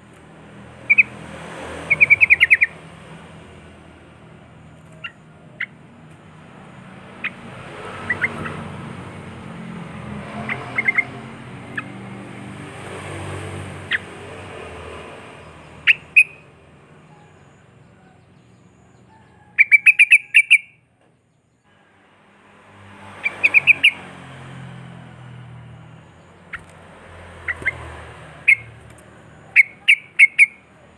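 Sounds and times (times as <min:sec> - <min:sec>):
bird chirping: 0:00.7 - 0:01.2, 0:01.8 - 0:02.8, 0:04.7 - 0:05.8, 0:07.0 - 0:09.3, 0:10.2 - 0:12.2, 0:13.8 - 0:21.7, 0:23.1 - 0:24.1, 0:25.7 - 0:30.8.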